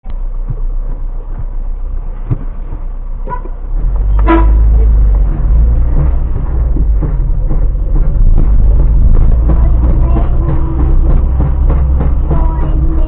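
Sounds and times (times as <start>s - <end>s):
car engine and road rumble: 0.0s - 13.0s
car horn toot: 3.2s - 4.8s.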